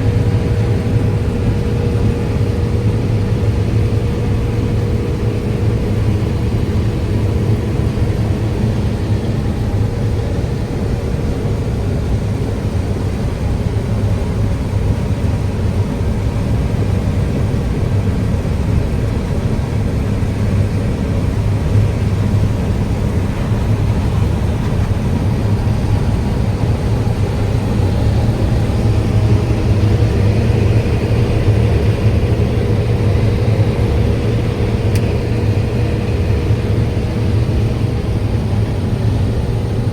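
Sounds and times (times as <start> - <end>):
diesel engine low drone: 0.0 - 39.9
thin steady whine: 20.2 - 39.9.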